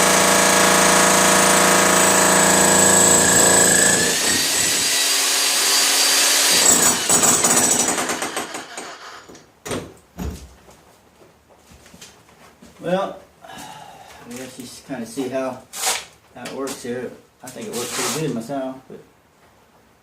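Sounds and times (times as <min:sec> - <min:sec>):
jackhammer hammering concrete: 0:00.0 - 0:09.3.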